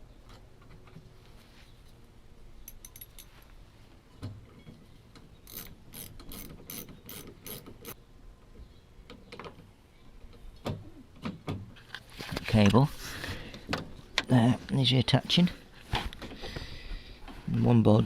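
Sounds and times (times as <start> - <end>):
ratchet wrench clicking: 5.5 - 8.0.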